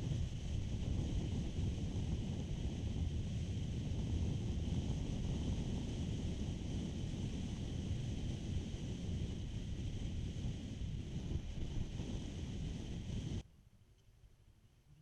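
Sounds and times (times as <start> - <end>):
wind rumble on microphone: 0.0 - 13.4
faint hiss: 0.0 - 15.0.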